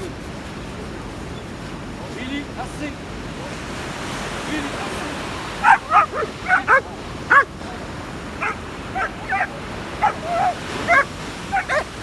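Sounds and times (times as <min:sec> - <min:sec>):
puppies yipping and barking: 0:05.5 - 0:07.5, 0:08.4 - 0:12.0.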